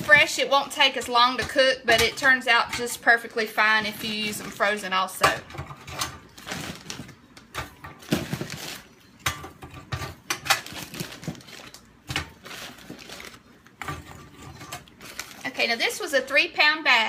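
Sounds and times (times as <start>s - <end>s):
frozen food clattering in metal basket: 3.6s - 15.9s.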